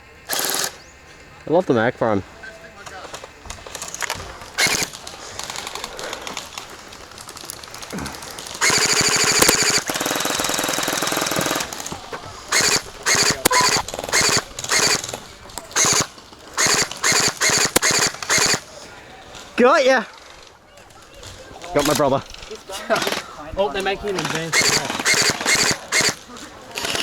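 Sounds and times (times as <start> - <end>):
electric gel blaster firing: 0.3 - 0.8, 3.7 - 5.8, 8.4 - 18.7, 24.2 - 27.0.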